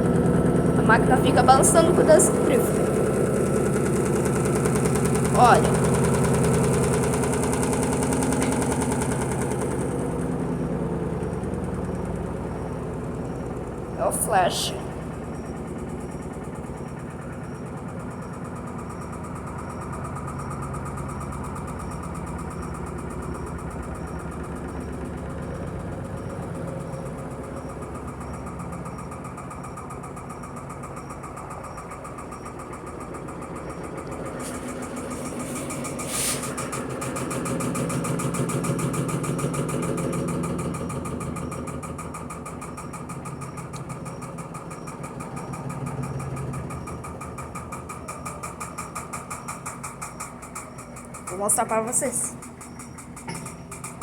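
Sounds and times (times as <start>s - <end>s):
washing machine spinning: 0.0s - 54.0s
brief hiss: 34.4s - 36.7s.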